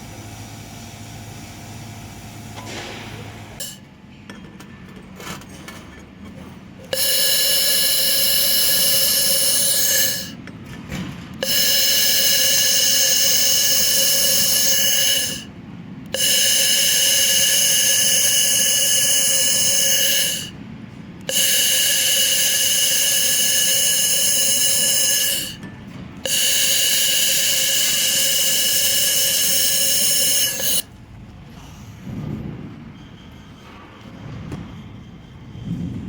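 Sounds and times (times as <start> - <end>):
laser welder high-pitched whine: 0.0 - 3.8, 6.9 - 10.4, 11.4 - 15.5, 16.1 - 20.6, 21.3 - 25.6, 26.3 - 30.9.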